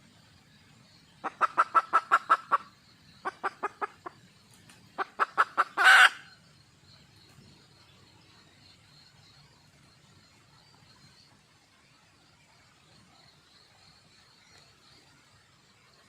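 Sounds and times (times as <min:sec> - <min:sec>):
hen clucking: 0:01.2 - 0:04.1, 0:05.0 - 0:06.2.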